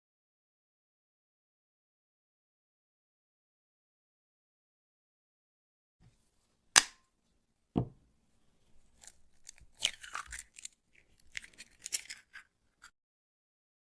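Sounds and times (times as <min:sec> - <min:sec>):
egg knocking on edge: 0:07.8 - 0:08.0
eggshell crackling: 0:08.8 - 0:12.9.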